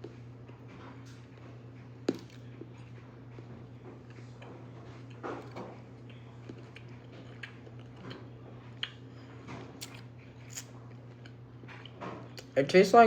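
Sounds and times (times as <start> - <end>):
steady low hum: 0.0 - 13.0
chewing crunchy chocolate: 2.1 - 12.6.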